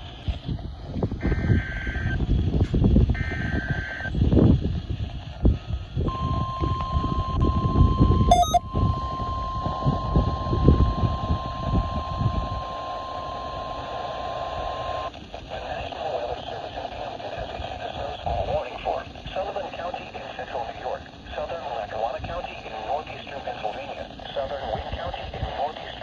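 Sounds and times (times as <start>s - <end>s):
buzzing data burst tones: 1.2s - 2.2s, 3.2s - 4.1s, 6.1s - 15.1s
steady alarm tone: 6.1s - 15.1s.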